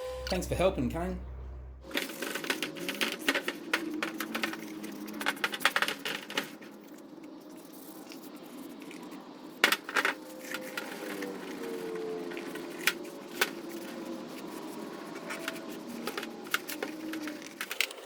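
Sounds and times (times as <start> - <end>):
clicks and clattering of tools: 1.9 - 7.0, 9.6 - 18.0.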